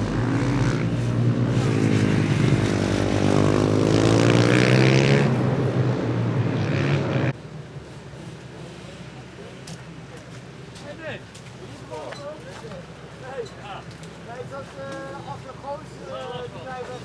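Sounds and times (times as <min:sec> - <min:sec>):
motorcycle engine revving: 0:00.0 - 0:07.4.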